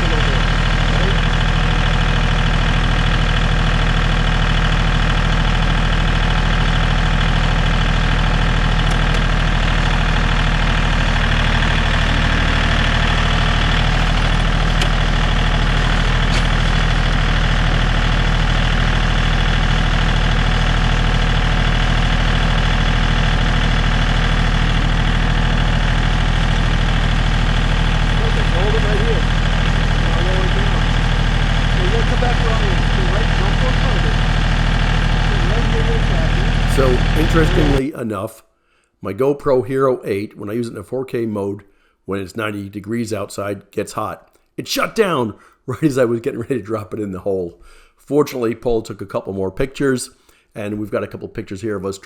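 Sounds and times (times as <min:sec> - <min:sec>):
tractor engine idling: 0:00.0 - 0:37.8.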